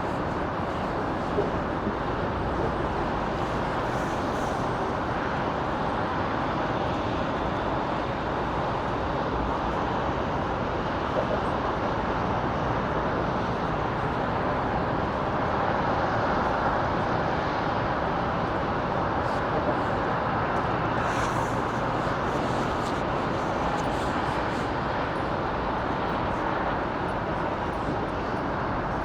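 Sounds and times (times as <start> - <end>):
distant road traffic roar: 17.4 - 29.0.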